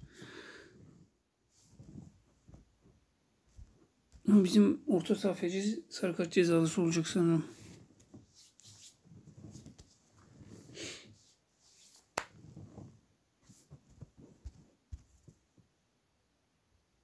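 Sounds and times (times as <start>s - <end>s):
faint breathing: 0.0s - 1.0s
handling noises on microphone: 0.1s - 4.3s, 7.5s - 15.7s.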